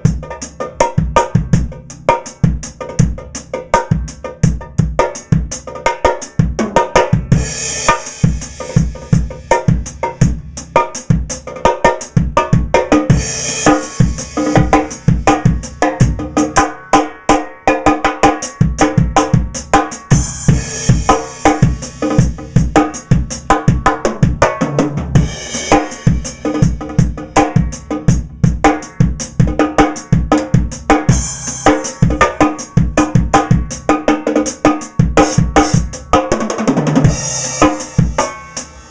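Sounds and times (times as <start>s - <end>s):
high tuned snare drum: 0.0s - 38.9s
bass drum strokes: 7.2s - 11.4s, 12.2s - 16.8s, 18.6s - 33.9s, 35.0s - 38.9s
cymbal crashing: 13.1s - 15.4s, 37.1s - 38.9s.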